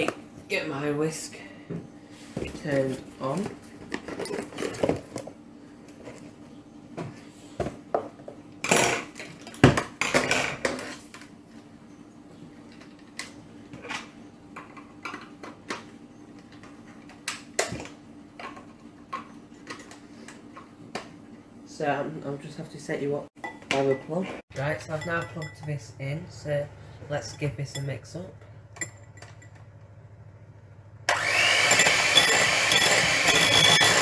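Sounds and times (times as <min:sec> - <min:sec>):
kitchen utensils knocking and clattering: 0:23.4 - 0:26.0, 0:31.8 - 0:34.0.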